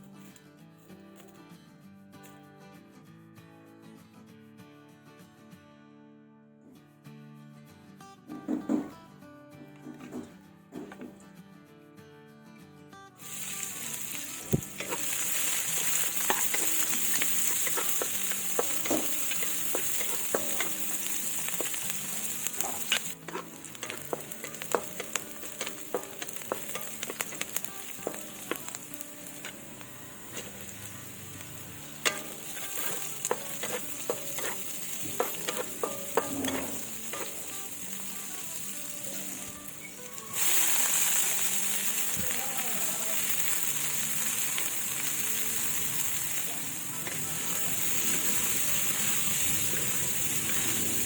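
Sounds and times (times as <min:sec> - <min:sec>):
food sizzling in hot oil: 0:13.2 - 0:51.0
spatula scraping a pan: 0:13.4 - 0:29.6, 0:30.3 - 0:38.2.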